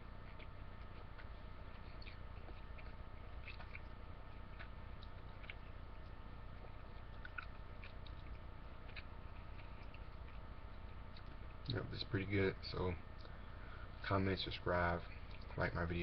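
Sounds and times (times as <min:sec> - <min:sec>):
low hum and hiss: 0:00.0 - 0:16.0
mouth clicks chewing: 0:00.2 - 0:11.8.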